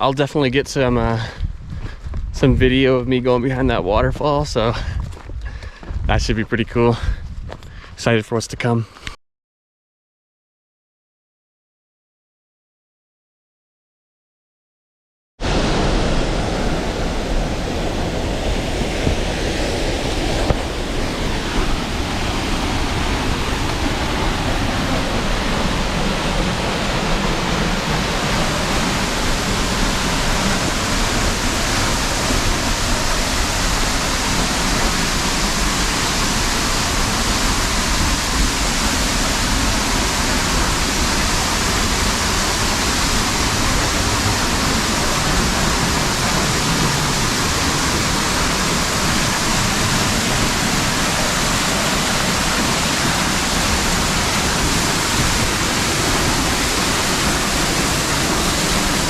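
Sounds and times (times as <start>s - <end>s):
waterfall rushing: 15.4s - 59.0s.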